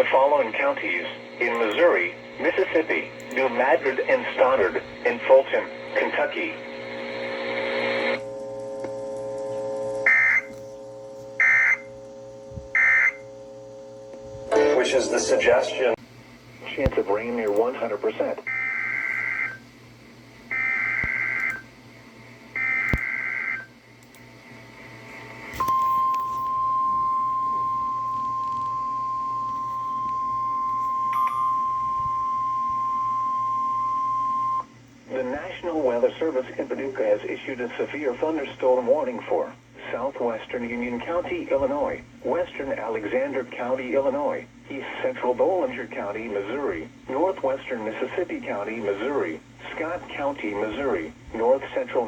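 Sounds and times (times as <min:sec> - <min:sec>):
steady hum: 0:00.0 - 0:52.0
steady alarm tone: 0:10.0 - 0:10.6, 0:11.4 - 0:12.0, 0:12.7 - 0:13.4, 0:18.5 - 0:19.6, 0:20.5 - 0:21.7, 0:22.6 - 0:23.8, 0:25.6 - 0:34.7.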